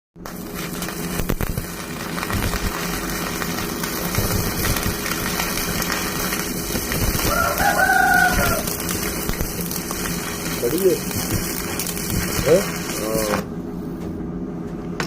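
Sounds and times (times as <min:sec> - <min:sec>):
steady low rumble: 0:00.3 - 0:14.5
rooster crowing: 0:07.2 - 0:08.9.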